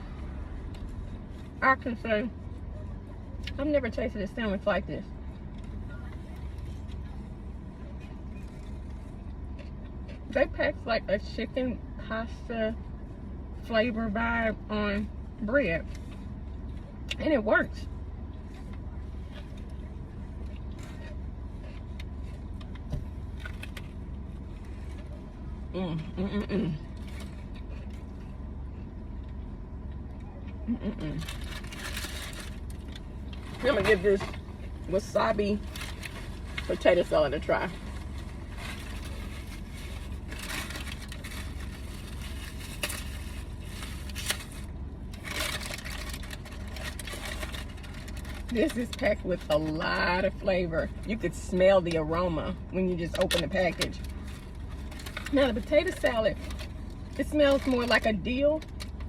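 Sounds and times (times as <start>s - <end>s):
steady low hum: 0.0s - 59.0s
vehicle low rumble: 0.0s - 59.0s
faint clicks and rustles: 17.9s - 51.2s, 53.1s - 59.0s.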